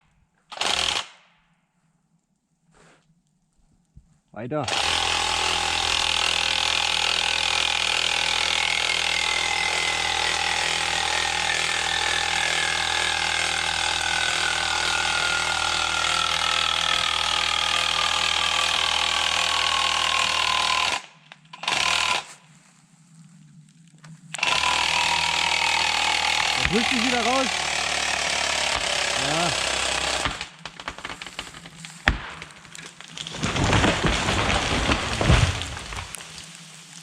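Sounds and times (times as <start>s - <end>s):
power tool motor whine: 4.7s - 21.0s, 24.4s - 30.4s.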